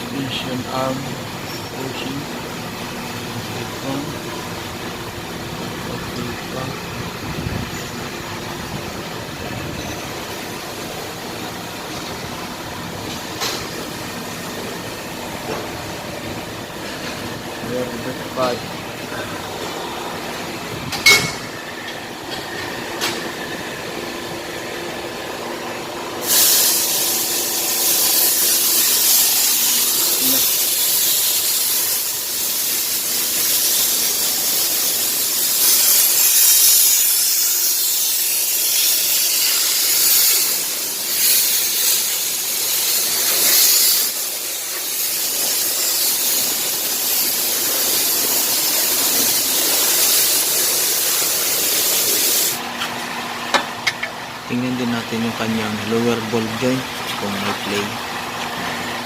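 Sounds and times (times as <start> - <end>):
pressurised spray hissing: 26.2 - 52.6.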